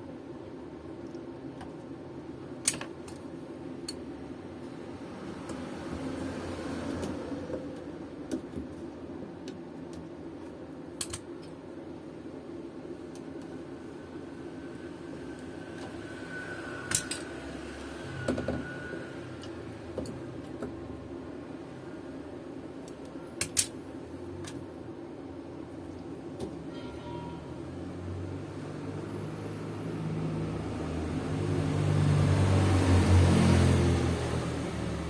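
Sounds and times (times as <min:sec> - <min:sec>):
hand tools clicking and tapping: 0:11.0 - 0:11.3.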